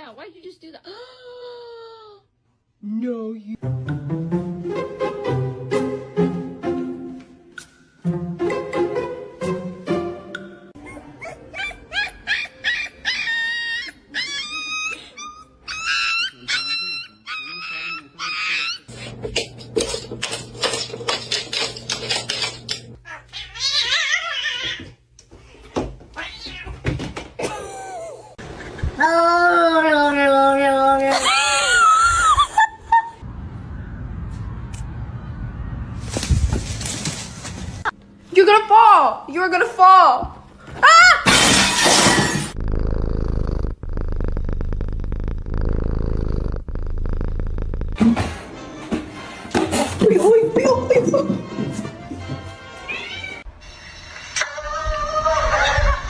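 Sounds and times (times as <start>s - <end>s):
cat yowling: 31.1s - 32.6s
cat purring: 42.5s - 48.1s.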